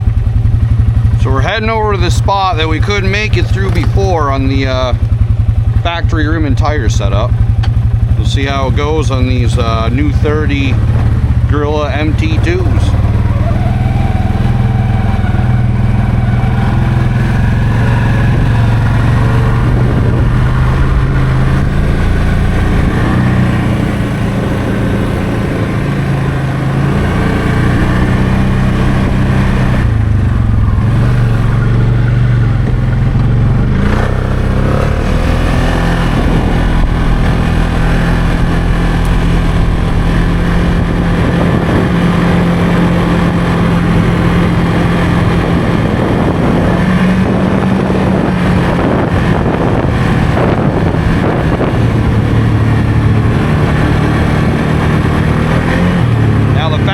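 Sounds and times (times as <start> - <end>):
atv engine running: 0.0 - 56.9.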